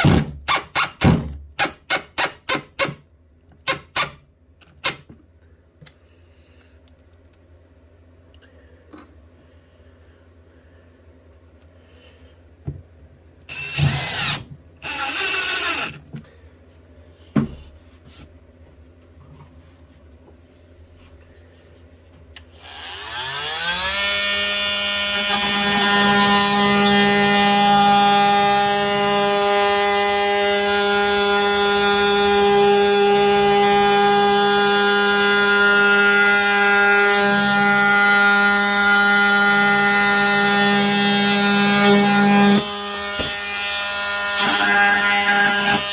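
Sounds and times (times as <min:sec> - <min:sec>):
multi-tool buzzes: 0:13.4 - 0:16.0, 0:22.4 - 0:45.9
multi-tool motor whine: 0:13.5 - 0:16.0, 0:22.5 - 0:45.9.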